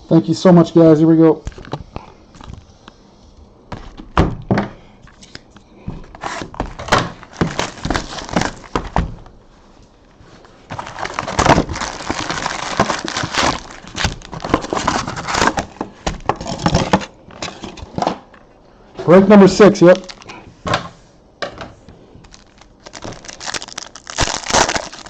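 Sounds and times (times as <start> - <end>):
wrapper and cardboard crinkling and tearing: 6.2 - 9.1, 10.7 - 17.1, 19.9 - 20.3, 22.2 - 25.0.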